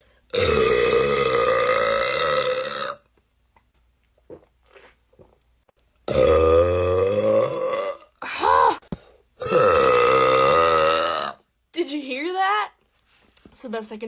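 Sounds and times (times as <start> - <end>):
person burping: 0.3 - 3.1, 6.1 - 8.8, 9.4 - 11.5.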